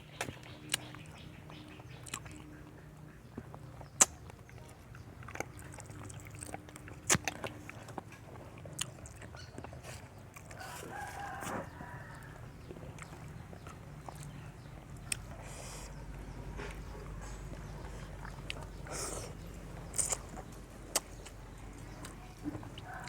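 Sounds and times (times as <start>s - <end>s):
rooster crowing: 10.6s - 12.6s.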